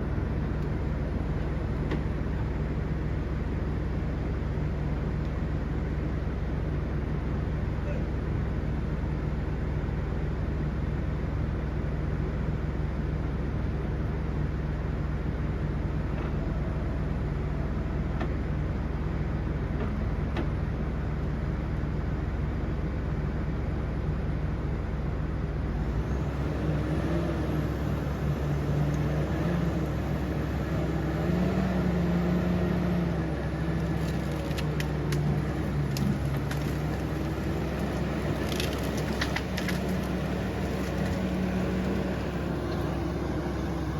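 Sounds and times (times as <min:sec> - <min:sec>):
bulldozer diesel engine: 0:00.0 - 0:43.9
sharp cracks and clanks: 0:33.8 - 0:41.2.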